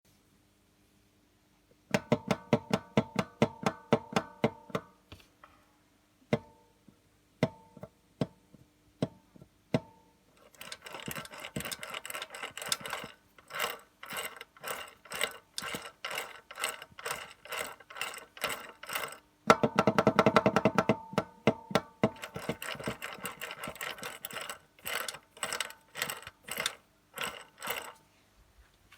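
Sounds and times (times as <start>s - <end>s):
gearbox shaft knocking: 10.5s - 27.9s.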